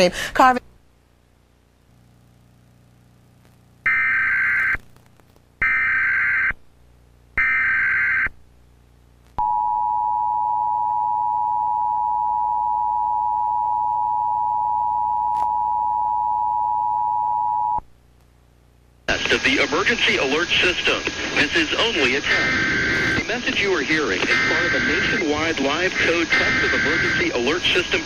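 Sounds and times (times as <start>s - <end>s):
buzzy digital data bursts: 19.2s - 28.0s.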